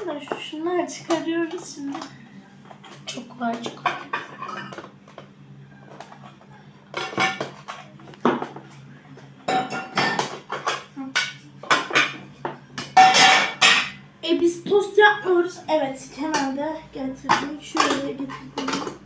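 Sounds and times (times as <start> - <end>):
low steady hum: 0.0 - 19.0
dishes and utensils clinking: 1.1 - 8.8, 9.4 - 14.0, 16.2 - 16.6, 17.2 - 19.0.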